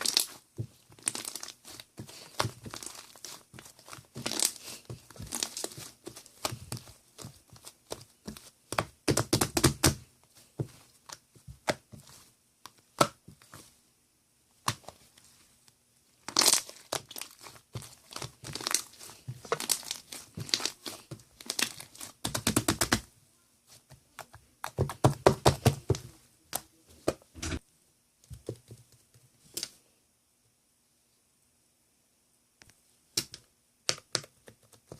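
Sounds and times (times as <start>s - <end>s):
crinkling handling noise: 0.0s - 13.8s, 14.6s - 23.1s.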